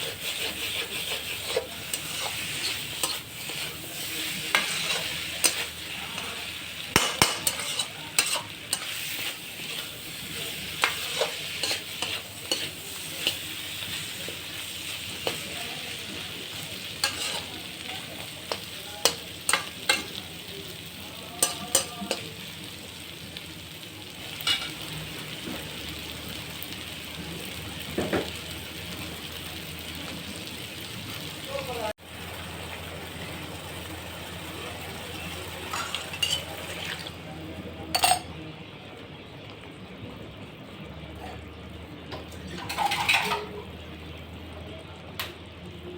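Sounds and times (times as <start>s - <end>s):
spoon scraping and knocking pan: 0.0s - 10.0s, 10.6s - 15.5s, 17.0s - 17.6s, 42.2s - 43.5s
curry sizzling in a pan: 0.0s - 45.9s.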